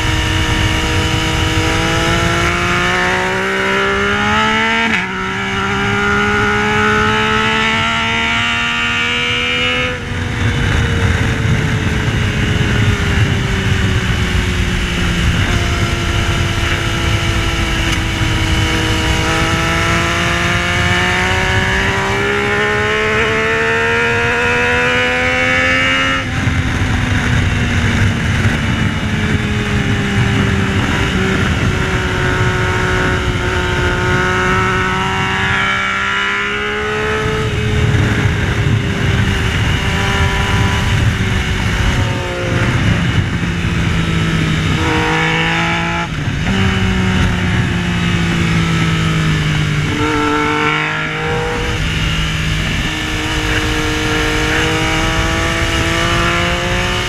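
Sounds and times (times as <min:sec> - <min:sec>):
motorcycle engine accelerating: 0:00.0 - 0:57.0
wind rush on microphone: 0:00.0 - 0:57.0.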